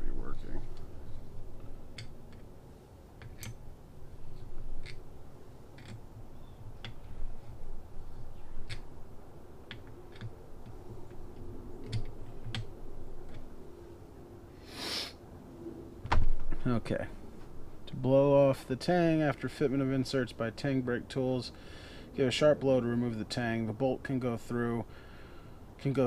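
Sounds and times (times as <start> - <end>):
hand tools clicking and tapping: 1.6 - 2.5, 3.2 - 3.6, 4.4 - 5.1, 5.7 - 7.6, 8.4 - 9.0, 9.6 - 13.5.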